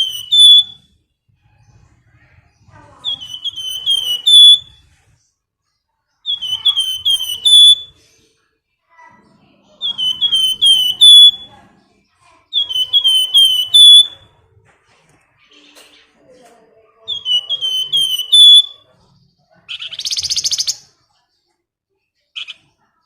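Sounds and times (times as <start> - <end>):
bird whistling song: 0.0 - 1.0, 2.6 - 5.0, 6.2 - 8.1, 9.7 - 11.6, 12.5 - 14.4, 17.0 - 21.0, 22.4 - 22.6.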